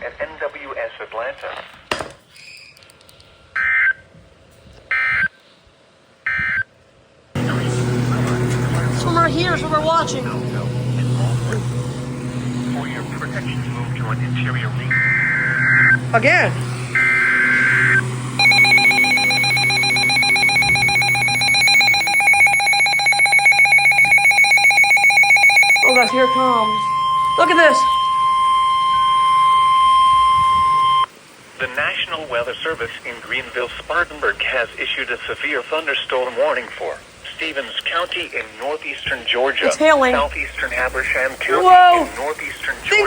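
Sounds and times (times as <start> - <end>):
vehicle engine hum: 7.4 - 31.6, 39.3 - 43.0
high digital data tone bursts: 12.8 - 31.1.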